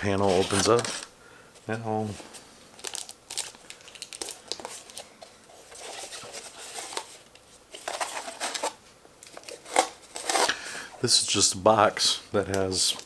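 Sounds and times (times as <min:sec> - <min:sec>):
packaging rustling: 0:00.0 - 0:01.1, 0:02.1 - 0:10.6.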